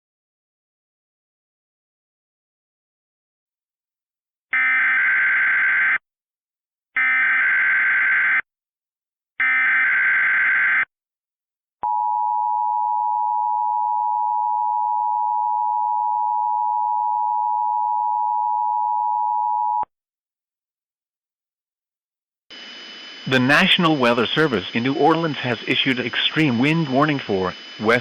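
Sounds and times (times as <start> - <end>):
electronic screech data bursts: 22.5 - 28.0.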